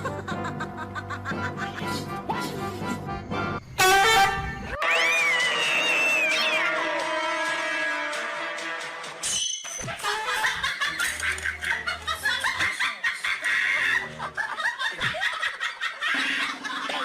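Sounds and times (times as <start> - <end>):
person laughing hard: 10.0 - 17.0.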